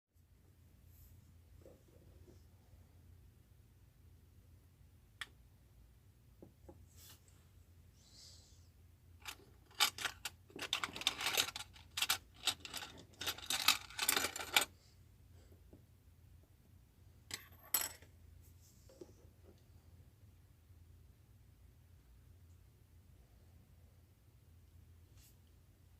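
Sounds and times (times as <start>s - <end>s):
objects clattering and rustling: 9.2s - 14.7s.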